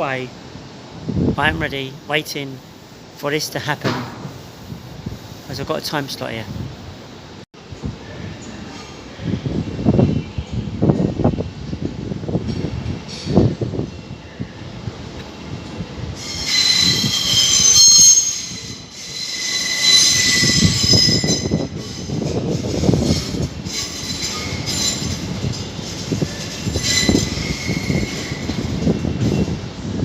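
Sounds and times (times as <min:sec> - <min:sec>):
low train rumble: 0:00.0 - 0:30.0
train wheels squealing on rails: 0:12.5 - 0:14.8, 0:15.7 - 0:30.0.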